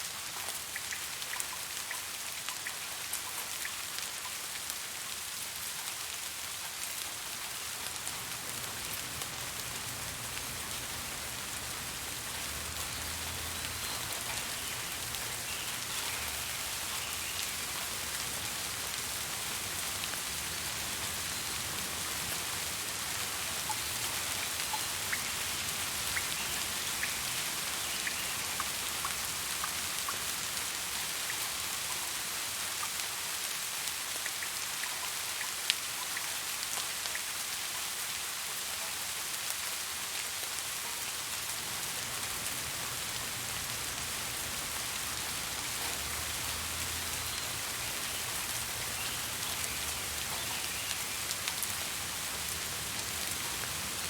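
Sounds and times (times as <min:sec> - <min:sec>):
steady rain hiss: 0:00.0 - 0:54.0
raindrops ticking: 0:07.8 - 0:33.1, 0:33.8 - 0:37.3, 0:41.2 - 0:54.0.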